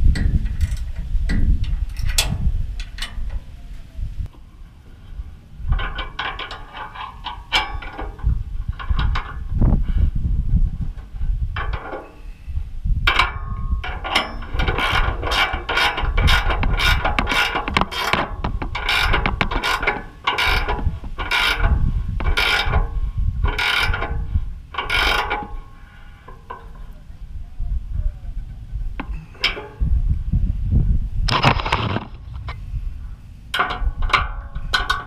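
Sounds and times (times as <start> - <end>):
ratchet wrench clicking: 0.1 - 3.2, 13.1 - 22.8, 23.4 - 25.5.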